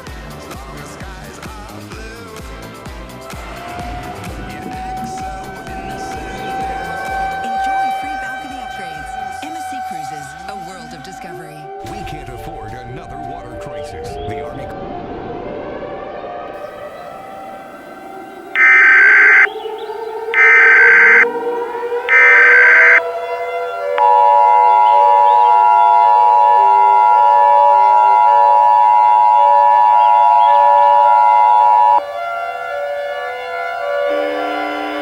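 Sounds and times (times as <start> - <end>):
digital data tone bursts: 18.6 - 19.5, 20.4 - 21.3, 22.1 - 23.0
siren winding up: 18.6 - 19.5, 20.4 - 21.3, 22.1 - 23.0, 24.0 - 32.0
two-tone alert signal: 18.6 - 19.5, 20.4 - 21.3, 22.1 - 23.0, 30.7 - 32.0.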